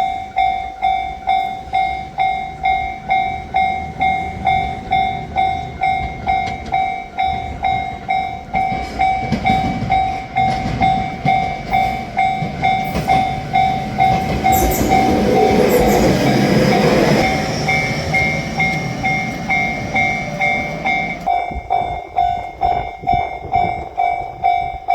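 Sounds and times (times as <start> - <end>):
level crossing bell clanging: 0.0 - 24.9
train rumble: 0.0 - 24.9
high squeals: 11.3 - 21.4.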